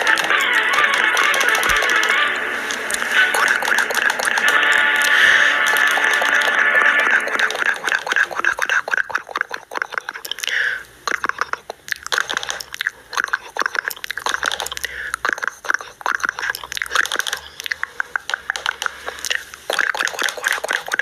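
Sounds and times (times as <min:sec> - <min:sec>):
crunching clicks: 0:00.0 - 0:21.0.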